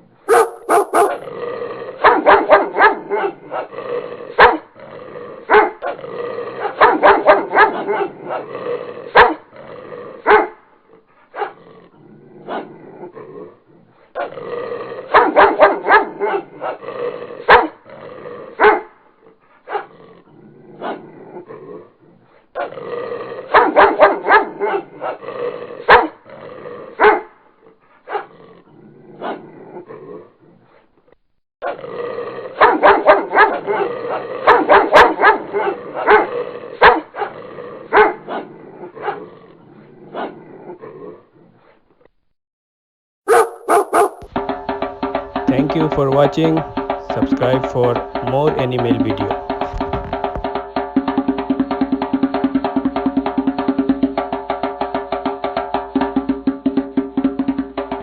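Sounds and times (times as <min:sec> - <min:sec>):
dog barking: 0:00.3 - 0:01.3, 0:02.0 - 0:03.7, 0:04.4 - 0:04.7, 0:05.5 - 0:05.9, 0:06.6 - 0:08.1, 0:09.2 - 0:09.4, 0:10.2 - 0:10.6, 0:15.1 - 0:16.7, 0:17.5 - 0:17.8, 0:18.6 - 0:18.9, 0:23.5 - 0:25.1, 0:25.9 - 0:26.2, 0:27.0 - 0:27.3, 0:32.6 - 0:33.8, 0:34.5 - 0:37.3, 0:37.9 - 0:38.2, 0:43.3 - 0:44.3.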